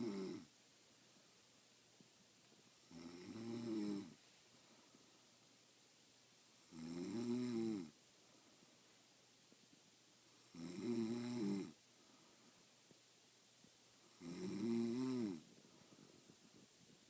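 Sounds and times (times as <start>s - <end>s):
woman snoring: 0.0s - 0.5s, 2.9s - 4.2s, 6.7s - 7.9s, 10.5s - 11.8s, 14.1s - 15.4s.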